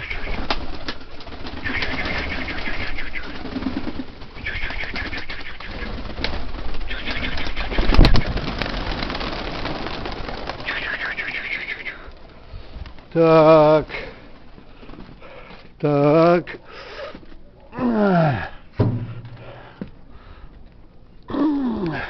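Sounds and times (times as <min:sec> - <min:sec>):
pigeons cooing: 0:00.0 - 0:12.5
wings flapping: 0:00.0 - 0:15.6
loud thump: 0:18.8 - 0:19.4.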